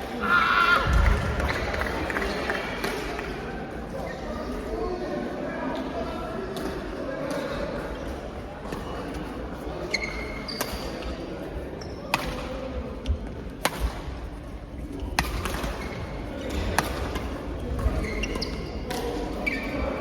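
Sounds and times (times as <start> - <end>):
murmur of a large hall: 0.0 - 20.0
shoe squeaks: 9.9 - 11.0, 17.9 - 18.8, 19.4 - 20.0
racket striking shuttlecock: 13.6 - 14.0, 15.2 - 15.8.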